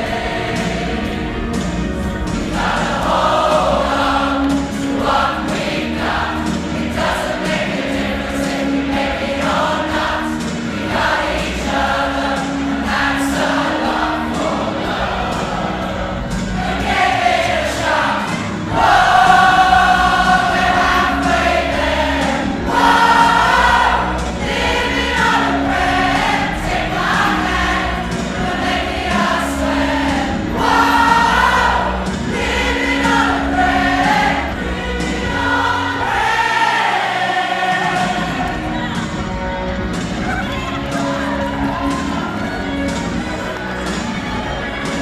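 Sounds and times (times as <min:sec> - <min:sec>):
choir singing in harmony: 0:00.0 - 0:45.0.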